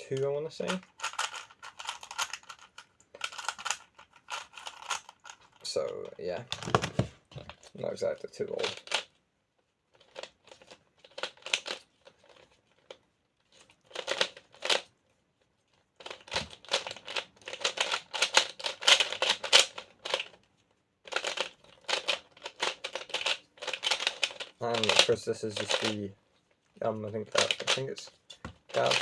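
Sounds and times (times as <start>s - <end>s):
puzzle cube plastic clicking: 0.7s - 5.6s, 8.6s - 9.1s, 10.0s - 13.0s, 13.9s - 14.8s, 16.0s - 20.4s, 21.1s - 26.0s, 27.3s - 29.0s.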